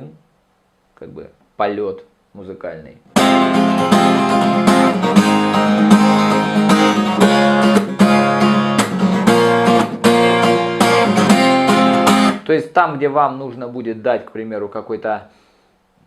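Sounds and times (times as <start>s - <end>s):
acoustic guitar strumming chords: 3.1s - 12.5s.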